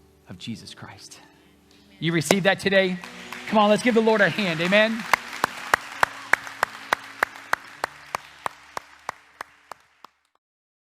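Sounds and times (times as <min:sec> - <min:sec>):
congregation applauding: 0:02.3 - 0:10.4.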